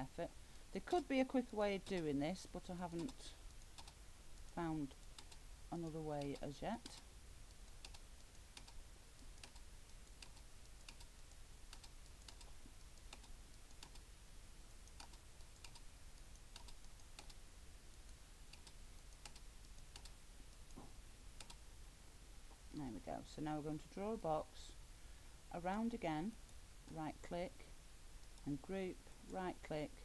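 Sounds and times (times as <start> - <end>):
mouse and keyboard clicks: 2.9 - 5.4, 6.2 - 14.1, 14.8 - 17.4, 18.0 - 20.8, 21.4 - 21.6.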